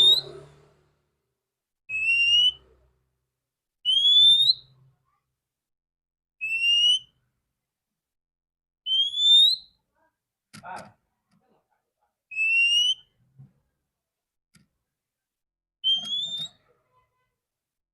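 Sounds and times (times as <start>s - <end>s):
bird whistled call: 0.0s - 0.4s, 1.9s - 2.6s, 3.9s - 4.7s, 6.4s - 7.1s, 8.9s - 9.8s, 12.3s - 13.1s, 15.8s - 16.7s.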